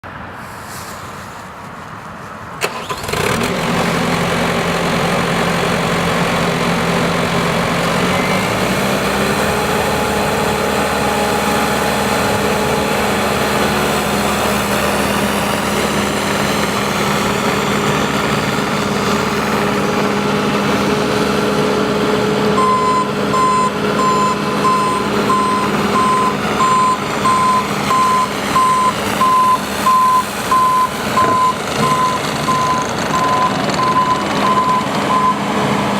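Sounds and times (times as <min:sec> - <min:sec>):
diesel engine running: 0:02.4 - 0:35.9
reverse alarm beeping: 0:22.6 - 0:35.4.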